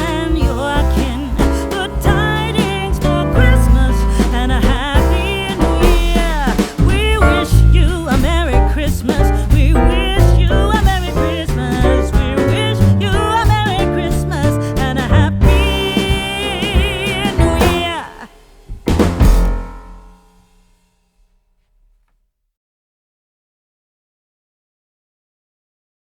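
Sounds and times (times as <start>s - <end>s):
song with sung vocals: 0.0s - 18.8s.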